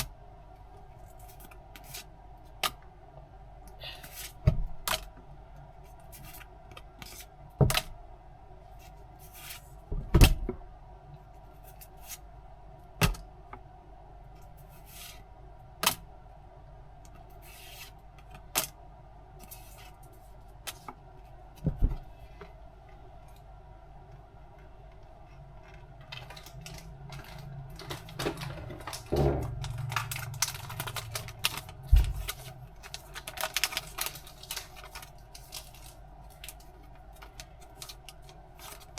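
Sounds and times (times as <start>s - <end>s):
rustling and scraping: 8.7s - 9.9s, 14.6s - 15.2s, 17.3s - 18.0s, 19.4s - 20.9s.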